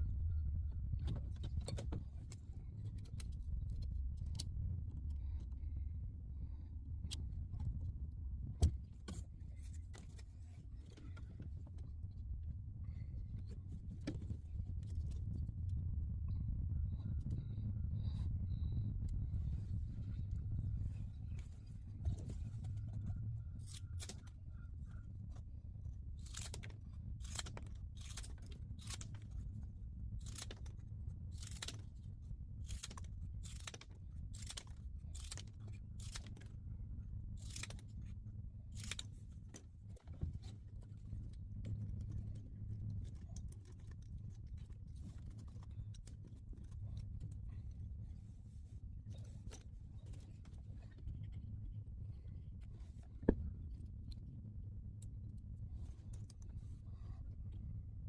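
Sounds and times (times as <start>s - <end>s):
steady low hum: 0.0s - 58.0s
crisp snipping sounds: 32.6s - 36.5s.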